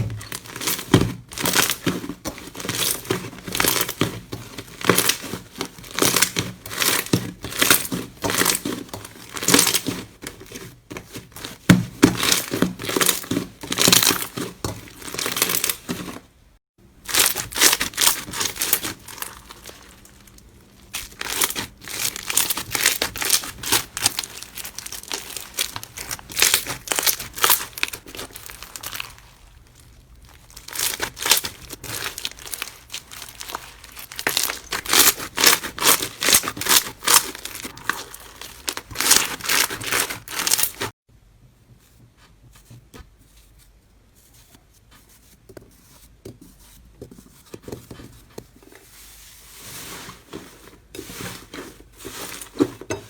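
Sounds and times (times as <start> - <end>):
slime crackling and popping: 0.0 - 4.1, 17.1 - 41.0.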